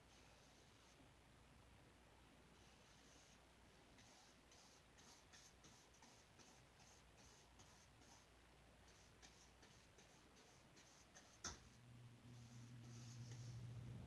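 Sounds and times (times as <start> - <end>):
paintbrush dabbing on canvas: 2.6 - 3.4, 4.0 - 13.8.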